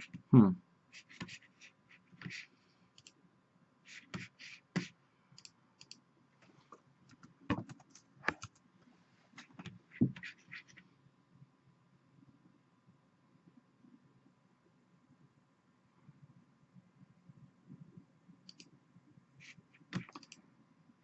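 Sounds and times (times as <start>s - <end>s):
computer keys and mouse clicking: 3.0s - 3.2s, 4.0s - 6.0s, 7.1s - 8.6s, 18.4s - 18.8s, 19.8s - 20.4s.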